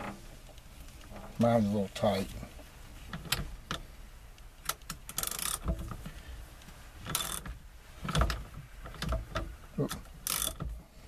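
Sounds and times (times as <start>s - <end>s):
socket ratchet clicking: 4.6s - 5.7s, 7.1s - 7.4s, 10.2s - 10.6s
metal clicks and knocks: 7.0s - 10.8s.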